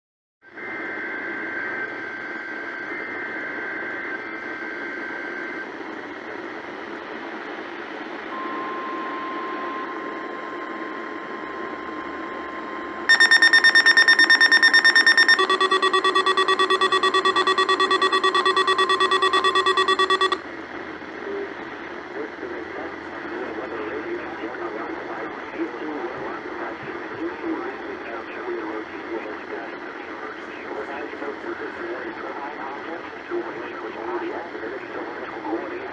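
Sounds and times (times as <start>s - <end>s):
rapid alarm beeping: 13.1s - 20.4s
steady warning alarm tone: 13.1s - 20.4s.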